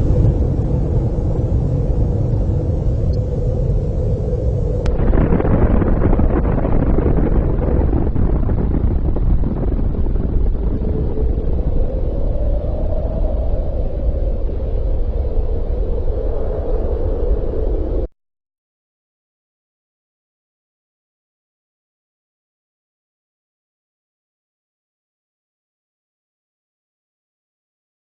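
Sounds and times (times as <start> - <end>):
nuclear blast low rumble: 0.0 - 18.1.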